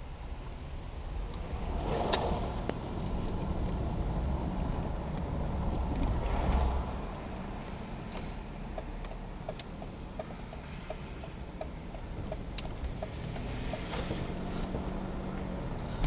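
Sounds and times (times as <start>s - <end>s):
car cabin rumble: 1.0s - 16.0s
turn signal clicking: 8.0s - 16.0s.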